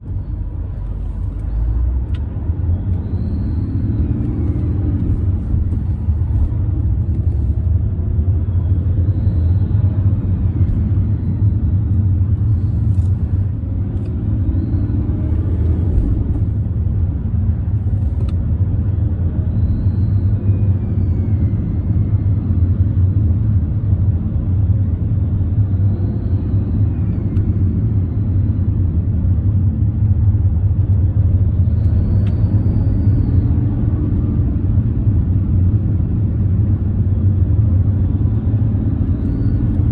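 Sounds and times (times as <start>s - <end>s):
faint whistle: 2.7s - 5.3s, 19.5s - 22.5s, 31.7s - 33.8s, 39.1s - 39.9s.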